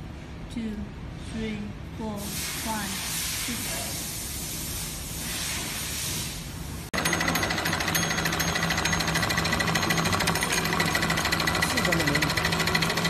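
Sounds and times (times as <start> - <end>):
sewing machine stitching: 7.0 - 13.0.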